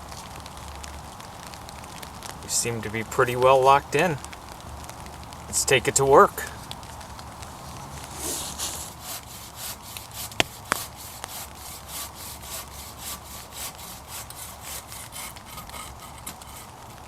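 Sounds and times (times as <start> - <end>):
bow saw rasping through wood: 8.1 - 17.0.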